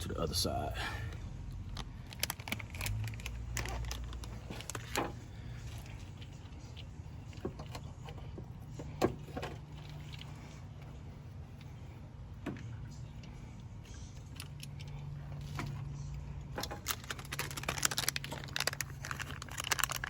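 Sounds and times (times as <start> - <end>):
steady low hum: 0.0 - 20.0
clicks and knocks handling car parts: 1.7 - 20.0.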